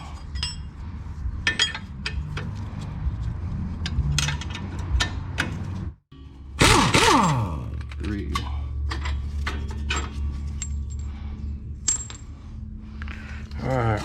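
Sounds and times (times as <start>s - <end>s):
steady low hum: 6.2s - 14.0s
sudden loud burst: 6.6s - 7.7s.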